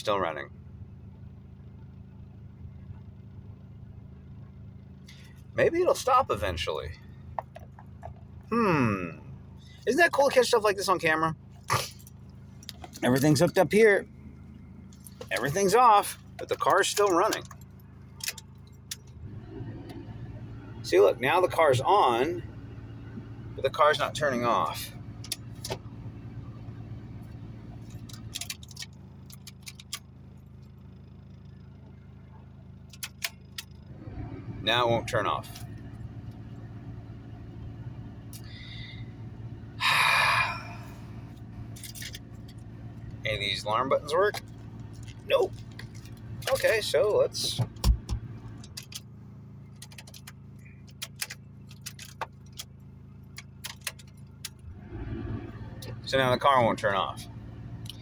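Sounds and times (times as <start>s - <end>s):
car engine idling: 0.0s - 58.0s
keys clicking and jingling: 49.7s - 52.7s.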